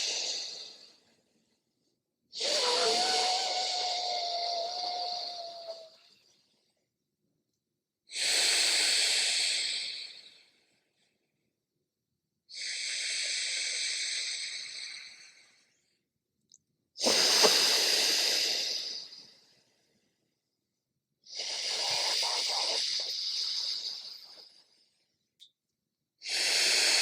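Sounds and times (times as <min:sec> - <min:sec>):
breathing through nostril: 0:17.0 - 0:19.2, 0:21.3 - 0:24.5.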